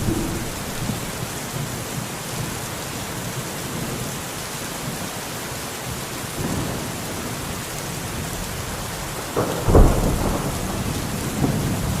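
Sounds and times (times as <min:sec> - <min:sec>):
thunder rumbling: 0:00.0 - 0:01.6, 0:09.4 - 0:12.0
steady rain: 0:00.0 - 0:12.0.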